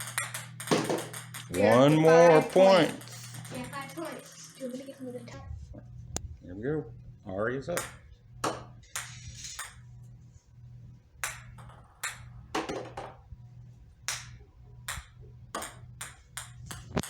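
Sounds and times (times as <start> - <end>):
ping pong balls bouncing: 0.0 - 5.3, 7.7 - 9.8, 11.2 - 13.2, 14.1 - 17.0
steady low hum: 0.0 - 17.0.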